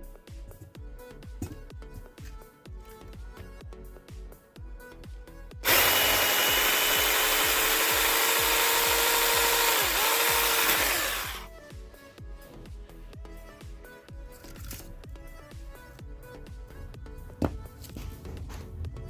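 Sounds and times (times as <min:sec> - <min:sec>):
background music with beat: 0:00.0 - 0:05.7, 0:08.0 - 0:19.0
mini chainsaw cutting wood: 0:05.6 - 0:11.5.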